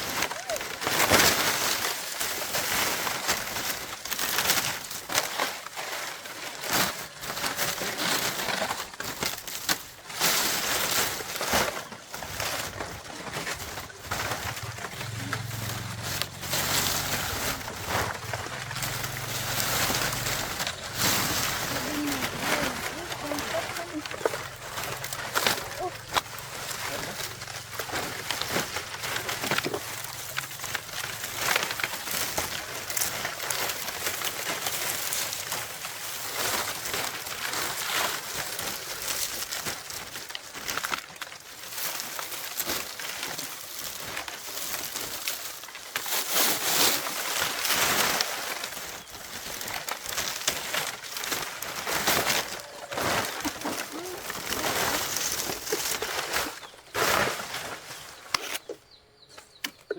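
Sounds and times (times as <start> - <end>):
dry leaves rustling and crackling: 0.0 - 59.9
birds calling: 12.6 - 32.6, 48.0 - 59.9.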